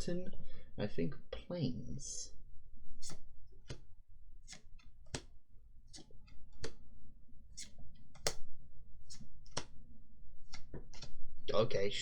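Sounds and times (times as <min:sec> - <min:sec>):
trading cards snapping and clicking: 0:03.0 - 0:06.8, 0:07.5 - 0:08.5, 0:09.1 - 0:09.8.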